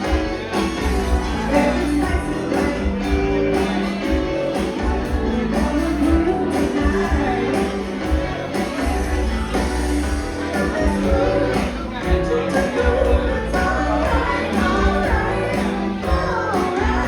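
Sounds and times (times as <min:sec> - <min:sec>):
person singing: 0:00.0 - 0:09.7, 0:10.4 - 0:17.0
band playing upbeat song: 0:00.0 - 0:17.0
bass line: 0:00.0 - 0:17.0.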